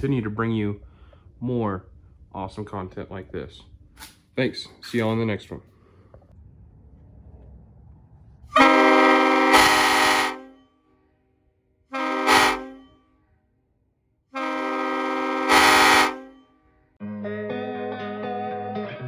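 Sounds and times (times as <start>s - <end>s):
multi-chime air horn blasts: 8.6s - 10.7s, 11.9s - 13.1s, 14.4s - 16.6s.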